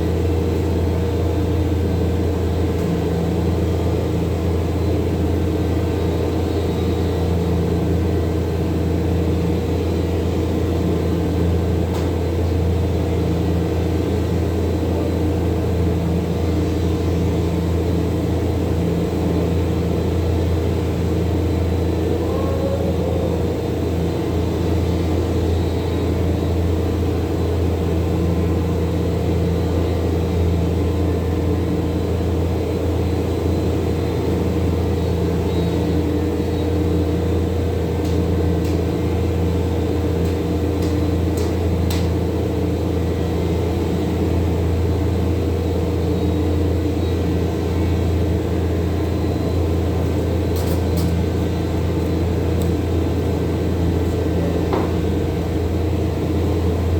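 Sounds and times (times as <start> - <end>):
low machine hum: 0.0 - 56.9.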